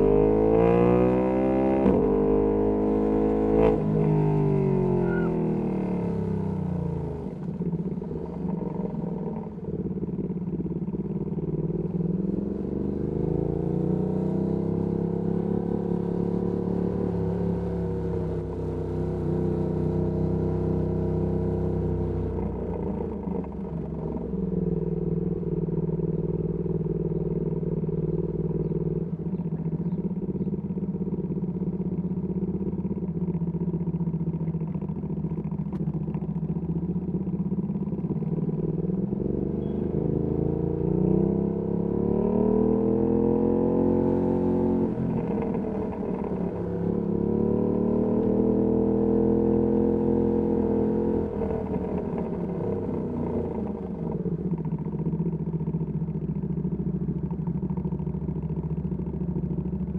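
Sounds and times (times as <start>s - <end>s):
motorcycle engine revving: 0.0s - 59.9s.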